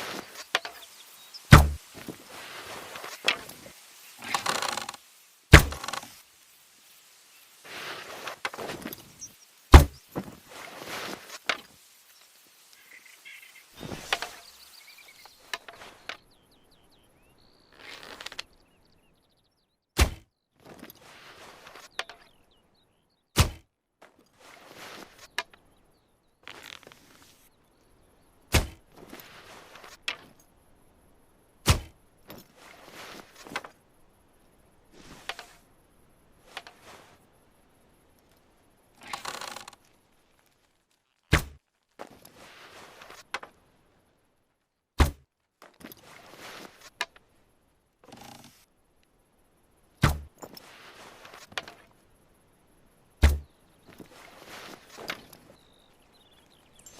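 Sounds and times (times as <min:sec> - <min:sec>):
rustling and small knocks: 0:00.0 - 0:16.6, 0:20.0 - 0:22.6, 0:23.4 - 0:27.9, 0:28.5 - 0:31.0, 0:31.6 - 0:49.2, 0:49.9 - 0:52.2, 0:53.0 - 0:56.9
bow shot thunks: 0:01.5 - 0:01.8, 0:05.5 - 0:06.0, 0:09.7 - 0:10.0, 0:20.0 - 0:20.3, 0:23.4 - 0:23.7, 0:28.5 - 0:28.8, 0:31.6 - 0:32.0, 0:41.3 - 0:41.6, 0:45.0 - 0:45.2, 0:50.0 - 0:50.4, 0:53.2 - 0:53.5.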